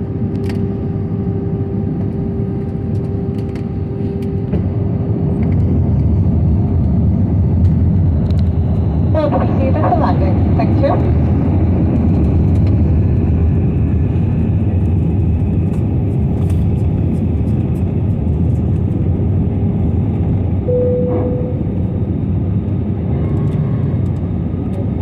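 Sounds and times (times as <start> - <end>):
airliner engines roaring in cabin: 0.0 - 25.0
short steady tone: 20.7 - 22.0.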